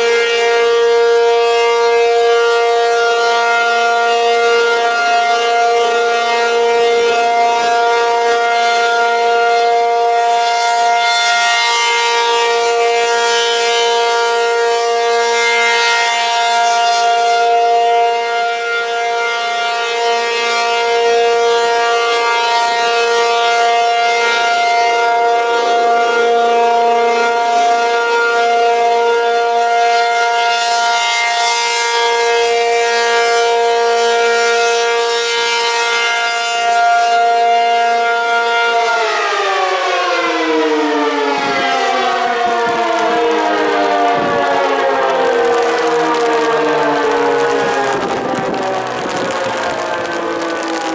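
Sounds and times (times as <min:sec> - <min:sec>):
rotating siren winding down: 0:03.3 - 0:17.7, 0:24.4 - 0:29.8, 0:37.5 - 0:50.9.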